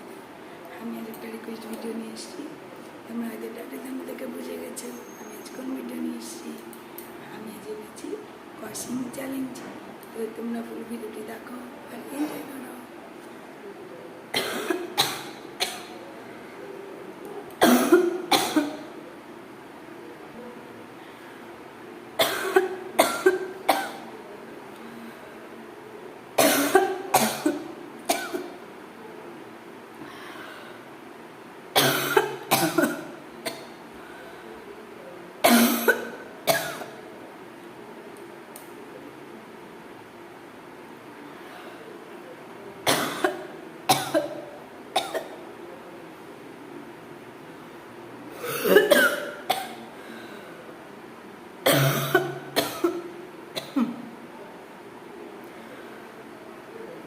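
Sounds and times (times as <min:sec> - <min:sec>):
person coughing: 0:31.8 - 0:33.6, 0:48.4 - 0:49.8, 0:51.7 - 0:53.0.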